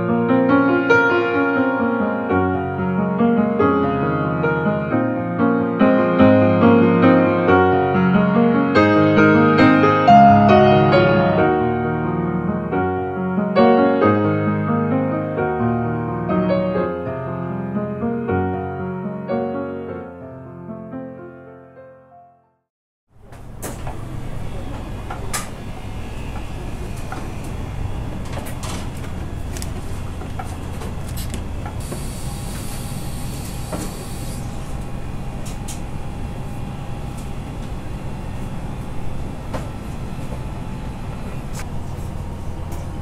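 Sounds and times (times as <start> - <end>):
machinery humming: 23.2 - 43.0
hiss: 31.8 - 34.7.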